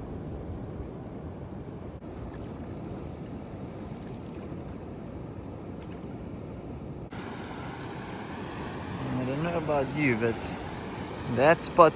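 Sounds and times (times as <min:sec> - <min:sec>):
surf on beach: 0:05.6 - 0:11.9.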